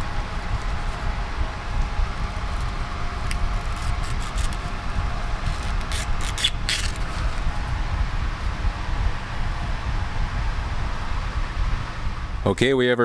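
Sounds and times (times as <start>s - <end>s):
steady low rumble: 0.0s - 13.0s
scrap parts scraping and rustling: 2.2s - 7.6s.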